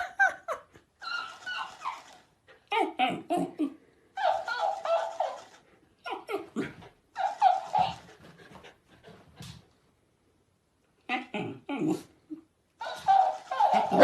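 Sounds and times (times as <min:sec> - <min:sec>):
puppy whining and yelping: 0:01.0 - 0:03.5, 0:04.2 - 0:08.3, 0:11.1 - 0:14.0.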